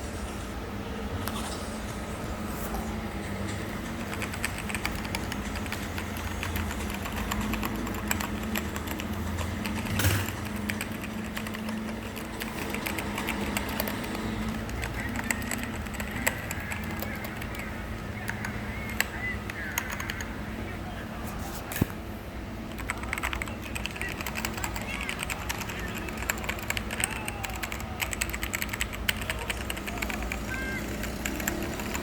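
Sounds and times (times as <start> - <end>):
mechanical keyboard key clicks: 3.9 - 20.3, 22.7 - 30.4.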